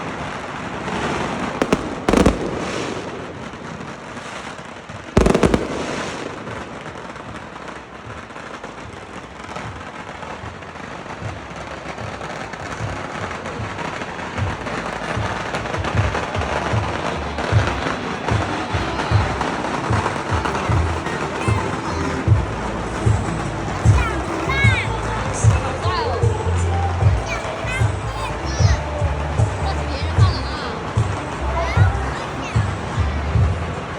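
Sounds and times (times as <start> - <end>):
firework bang: 0.0 - 33.9
fireworks crackling: 0.0 - 33.9
low music beat: 9.5 - 33.9.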